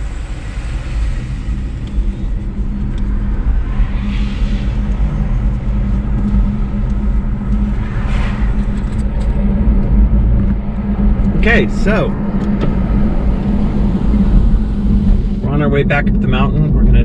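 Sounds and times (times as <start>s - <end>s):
car engine and road rumble: 0.0s - 17.0s
constant hum: 0.0s - 17.0s.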